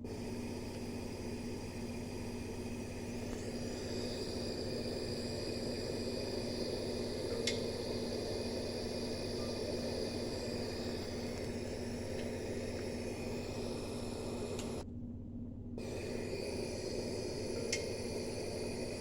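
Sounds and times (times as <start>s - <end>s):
steady hiss: 0.0s - 14.8s, 15.8s - 19.0s
low hum: 0.0s - 19.0s
faint ticks: 7.3s - 7.7s, 14.5s - 14.8s, 17.7s - 17.9s.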